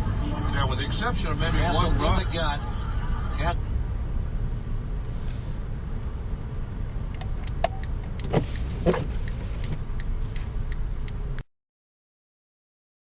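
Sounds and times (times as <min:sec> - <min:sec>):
car road and engine rumble: 0:00.0 - 0:11.5
clicks and knocks in car: 0:07.2 - 0:09.8.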